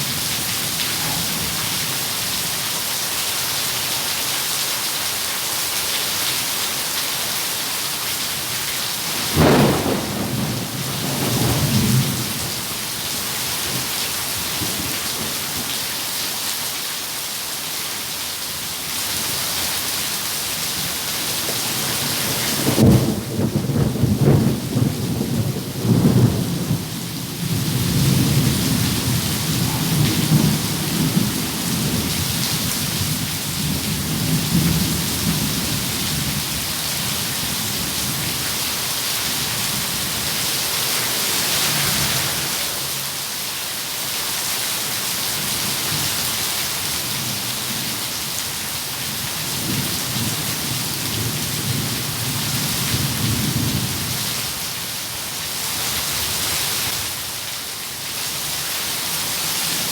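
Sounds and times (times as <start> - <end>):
rain falling: 0.0 - 59.9
thunder rumbling: 9.0 - 12.9, 21.2 - 38.5.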